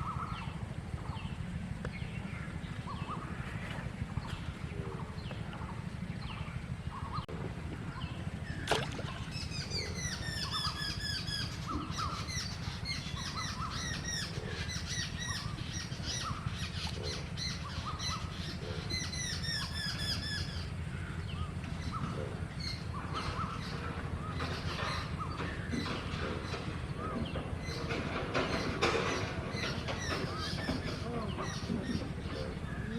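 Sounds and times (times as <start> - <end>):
low rumble: 0.0 - 24.4
birds squawking and chattering: 0.0 - 32.9.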